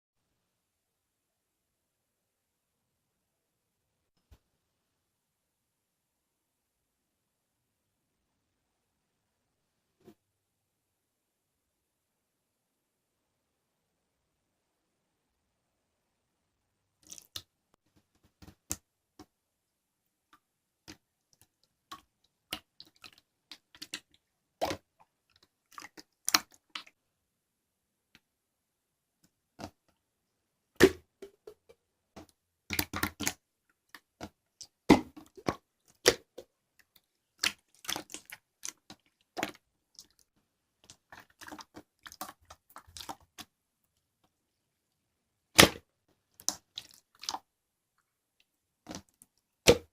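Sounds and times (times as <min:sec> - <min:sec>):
slime squished by hand: 0:37.4 - 0:40.2.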